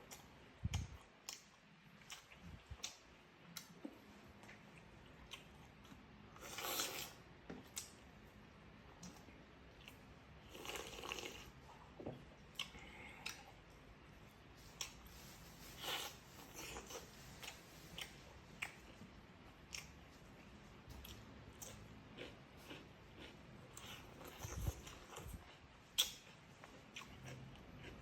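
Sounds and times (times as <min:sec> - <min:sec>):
close chewing and biting: 0:15.8 - 0:28.0.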